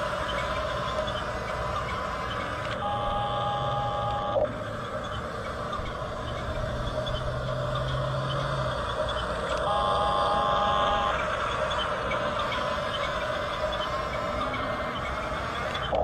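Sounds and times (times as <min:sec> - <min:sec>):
toy motor hum: 0:00.0 - 0:16.0
electronic tones: 0:02.8 - 0:04.5, 0:09.6 - 0:12.3.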